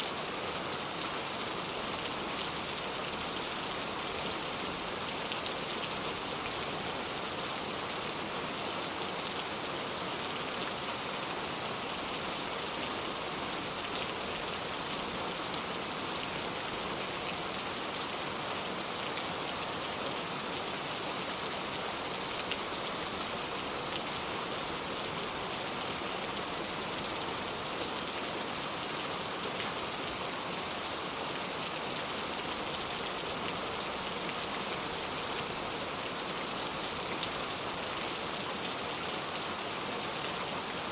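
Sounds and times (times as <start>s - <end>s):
steady rain falling: 0.0s - 40.9s.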